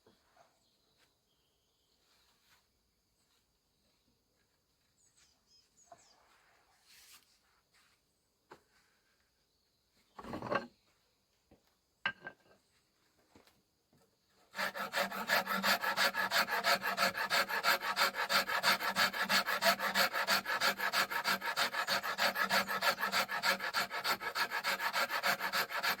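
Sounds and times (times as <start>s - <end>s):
rasp filing wood back and forth: 14.5s - 26.0s.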